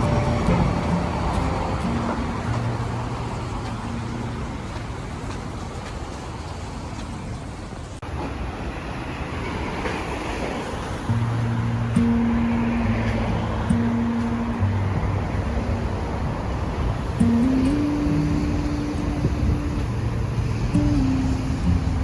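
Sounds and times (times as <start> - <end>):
city traffic noise: 0.0 - 22.0.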